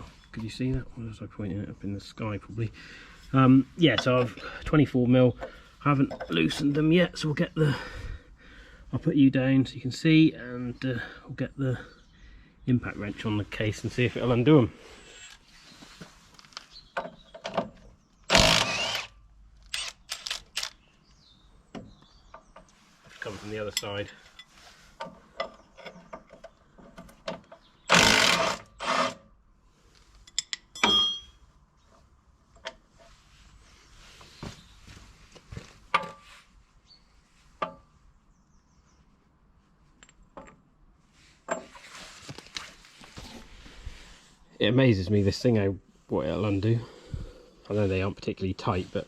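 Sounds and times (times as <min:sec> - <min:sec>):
impact wrench burst: 0:18.3 - 0:20.8, 0:27.9 - 0:29.1
metallic clanks of steel tools: 0:30.3 - 0:31.4.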